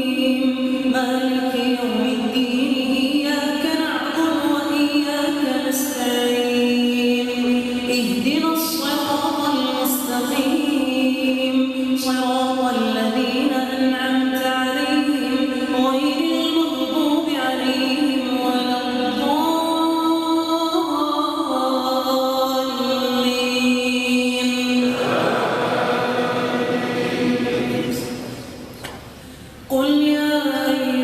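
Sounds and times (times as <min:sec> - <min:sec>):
man chanting melodically: 0:24.9 - 0:28.3.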